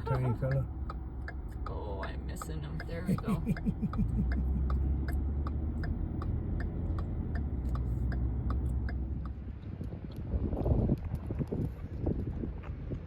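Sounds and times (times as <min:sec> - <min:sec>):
hazard blinkers ticking: 0:00.0 - 0:09.4.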